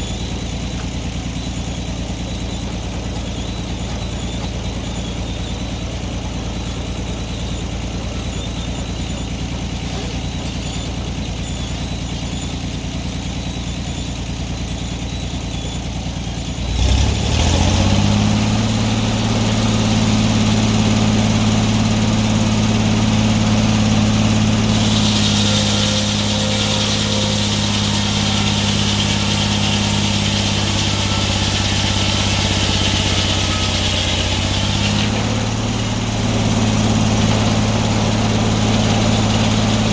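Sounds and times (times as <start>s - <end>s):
sawmill engine running: 0.0s - 39.9s
hiss: 24.7s - 35.2s.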